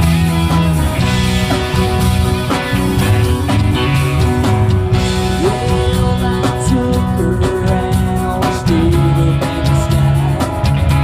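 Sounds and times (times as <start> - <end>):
rock band playing: 0.0 - 11.0
sliding melody line: 0.4 - 8.1.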